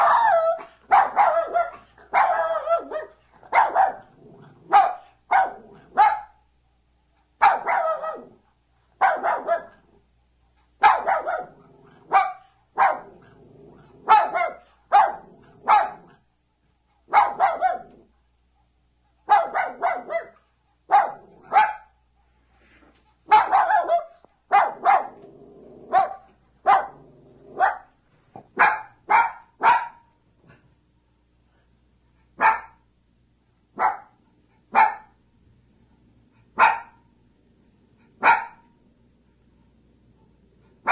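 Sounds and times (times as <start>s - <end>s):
dog barking: 0.0s - 6.4s, 7.4s - 8.4s, 9.0s - 9.9s, 10.8s - 13.3s, 14.0s - 16.2s, 17.1s - 18.0s, 19.2s - 22.0s, 23.3s - 25.2s, 25.9s - 27.9s, 28.5s - 30.1s, 32.4s - 32.8s, 33.8s - 35.2s, 36.6s - 37.0s, 38.2s - 38.7s.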